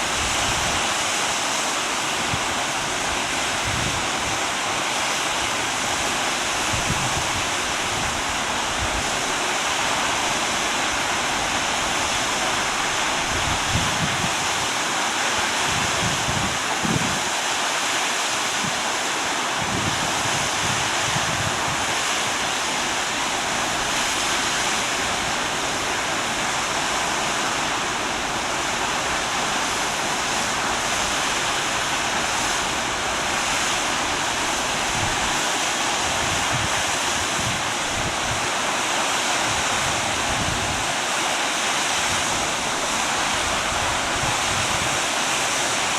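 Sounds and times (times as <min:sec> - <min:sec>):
wind rumble on microphone: 0:00.0 - 0:01.0, 0:02.1 - 0:04.8, 0:05.4 - 0:09.4, 0:10.0 - 0:14.8, 0:15.4 - 0:17.4, 0:19.5 - 0:26.6, 0:30.6 - 0:38.6, 0:39.4 - 0:41.0, 0:42.0 - 0:45.9
waterfall rushing: 0:00.0 - 0:45.9.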